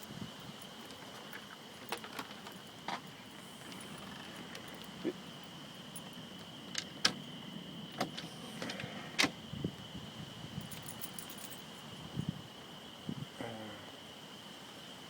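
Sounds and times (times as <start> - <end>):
light clinks and taps: 0.0 - 7.2, 10.6 - 11.7.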